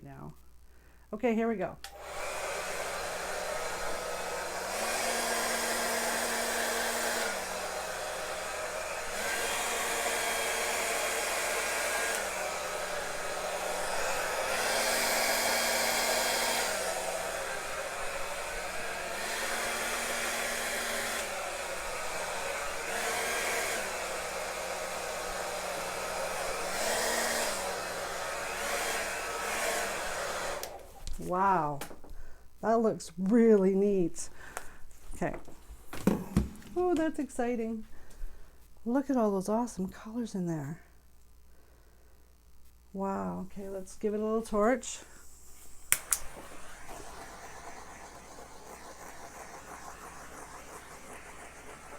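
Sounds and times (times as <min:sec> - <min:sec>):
blow dryer running: 0:01.9 - 0:31.7, 0:45.3 - 0:51.9.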